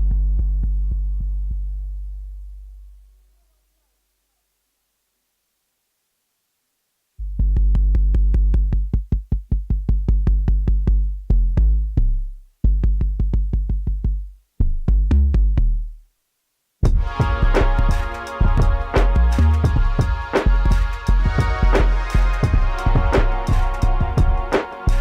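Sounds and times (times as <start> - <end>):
deep sustained bass: 0.0 - 3.1, 16.8 - 25.0
electronic hip-hop beat: 16.8 - 25.0.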